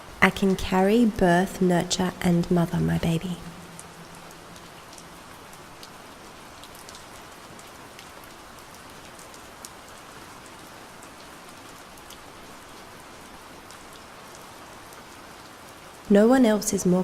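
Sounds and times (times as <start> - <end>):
gentle rain falling: 0.0 - 17.0
raindrop ticks: 3.2 - 12.3.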